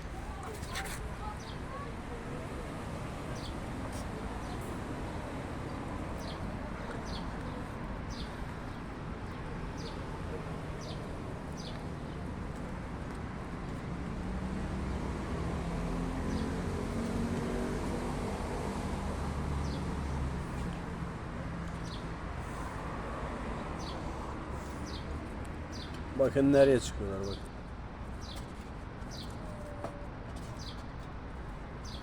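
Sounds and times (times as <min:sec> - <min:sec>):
vehicle engine hum: 0:03.8 - 0:26.2
small birds chirping: 0:06.2 - 0:12.3, 0:15.8 - 0:17.2, 0:21.6 - 0:22.9, 0:23.7 - 0:27.5, 0:28.2 - 0:29.8, 0:30.4 - 0:31.0.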